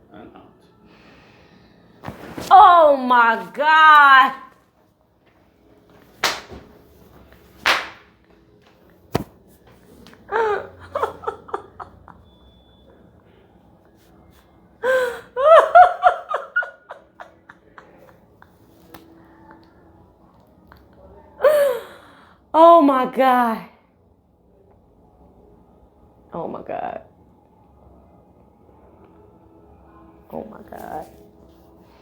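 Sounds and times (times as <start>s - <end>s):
woman laughing breathlessly: 10.3s - 12.2s, 14.8s - 18.1s.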